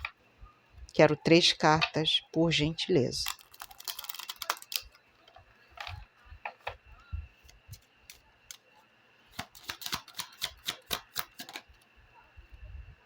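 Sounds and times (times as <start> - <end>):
cards being shuffled by hand: 3.3 - 4.9, 9.4 - 11.6.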